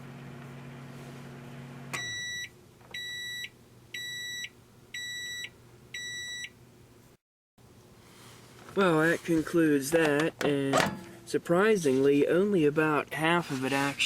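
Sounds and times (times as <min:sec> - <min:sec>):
microwave oven humming: 0:00.0 - 0:11.8
microwave beeps: 0:01.9 - 0:06.6.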